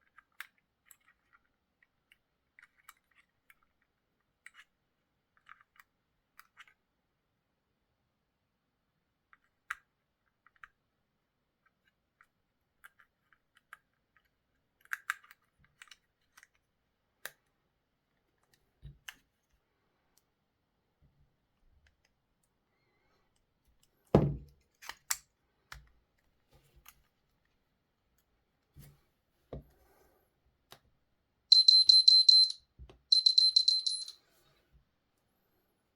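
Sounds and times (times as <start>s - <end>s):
high-pitched electronic beeping: 31.5s - 34.1s.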